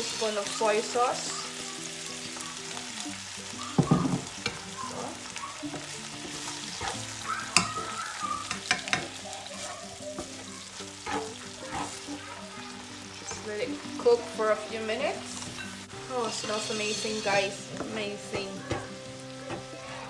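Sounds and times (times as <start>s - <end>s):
food sizzling in oil: 0.0s - 20.0s
soft background music: 0.0s - 20.0s
utensil scraping and knocking pan: 3.6s - 12.3s.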